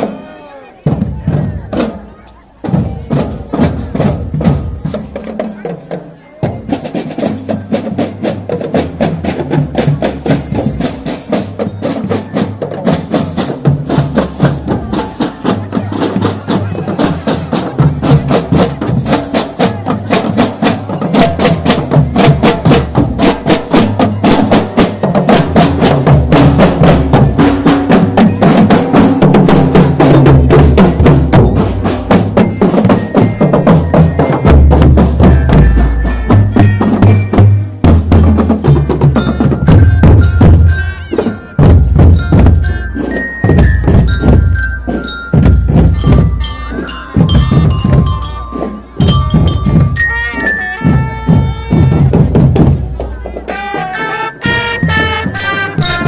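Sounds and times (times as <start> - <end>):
marching drums: 0.0 - 56.0
glockenspiel melody: 20.1 - 52.3, 53.5 - 56.0.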